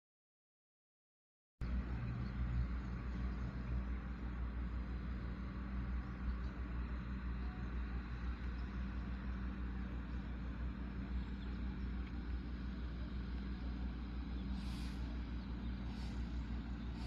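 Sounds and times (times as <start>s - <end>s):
machinery engine hum: 1.6s - 17.0s
brief hisses: 14.5s - 17.0s.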